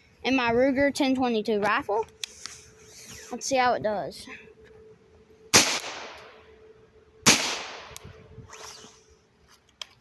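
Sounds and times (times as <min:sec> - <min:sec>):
rifle shots with echo: 0:05.5 - 0:06.4, 0:07.2 - 0:08.0.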